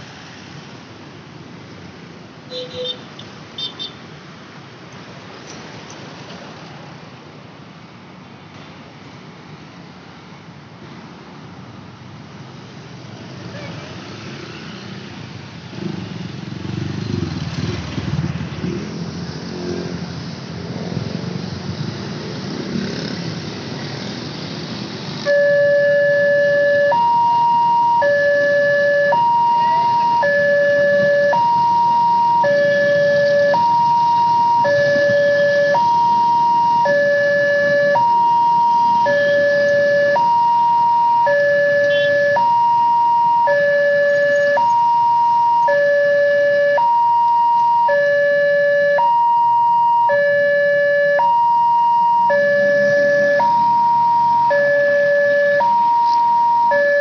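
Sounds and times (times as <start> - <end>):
road traffic passing: 0.0 - 57.0
level-crossing warning siren: 25.2 - 57.0.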